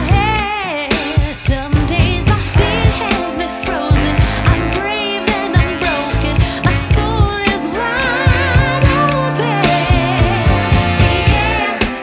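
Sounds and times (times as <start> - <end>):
drum beat and bass: 0.0 - 12.0
person singing long notes: 2.5 - 12.0.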